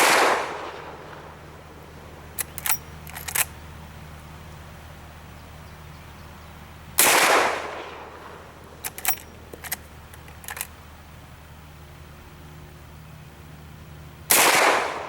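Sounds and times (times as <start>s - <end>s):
rifle shot: 0.0s - 1.0s, 7.0s - 9.8s, 14.3s - 15.0s
rifle lever clicking: 2.4s - 3.5s, 8.8s - 10.7s.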